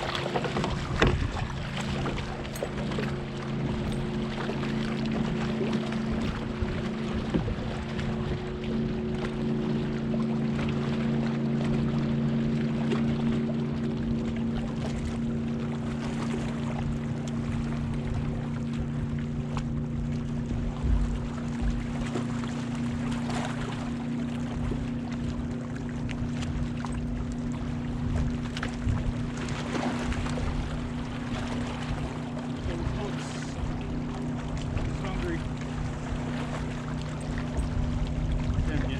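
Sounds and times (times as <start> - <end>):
boat motor humming: 0.0 - 38.9
water: 0.0 - 38.9
wind: 0.0 - 38.9.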